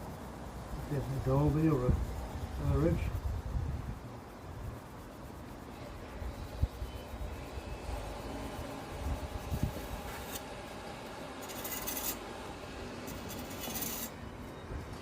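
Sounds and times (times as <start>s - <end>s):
trowel scraping stone: 9.8s - 10.5s, 11.4s - 12.2s, 13.0s - 14.2s.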